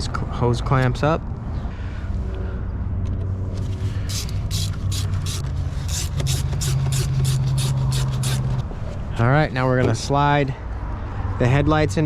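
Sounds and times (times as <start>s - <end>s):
hand ratchet clicking: 4.1s - 8.6s.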